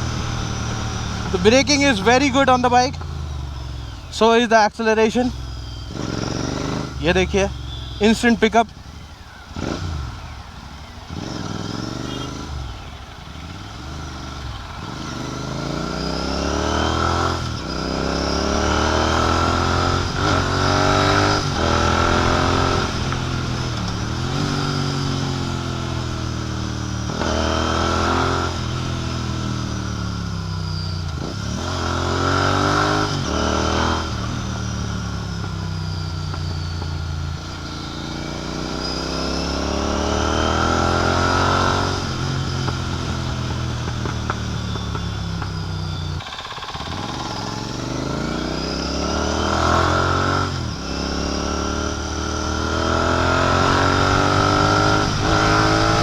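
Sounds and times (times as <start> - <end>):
motorcycle engine accelerating: 0.0 - 56.0
thin steady whistle: 0.3 - 8.5, 27.2 - 56.0.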